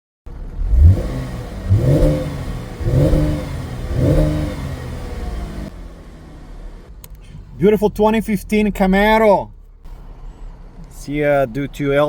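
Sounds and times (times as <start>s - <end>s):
car engine revving: 0.3s - 8.9s.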